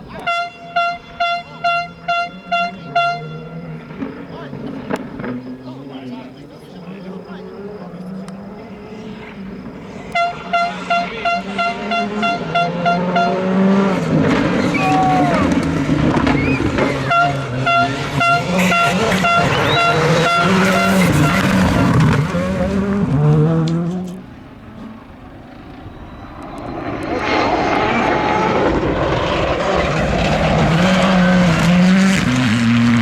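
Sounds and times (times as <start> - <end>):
horns tooting in rapid pulses: 0.0 - 5.6, 8.6 - 23.2
rally car engine revving past: 2.0 - 6.2, 6.8 - 33.0.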